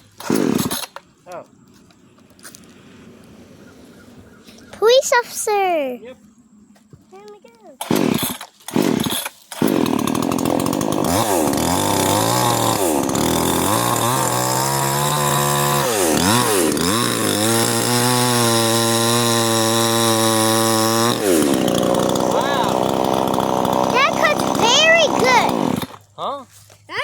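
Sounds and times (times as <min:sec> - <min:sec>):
chainsaw cutting log: 0:00.0 - 0:01.1, 0:07.8 - 0:26.0.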